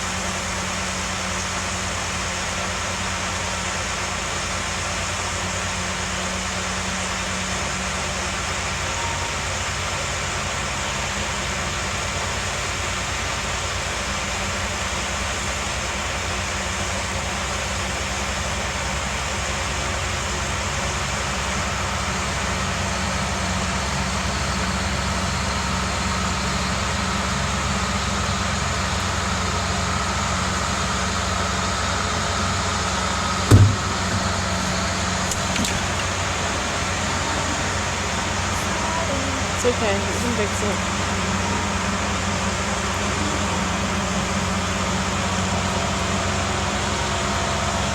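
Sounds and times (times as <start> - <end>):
faint engine whine: 0.0 - 47.9
vehicle engine droning: 18.4 - 47.9.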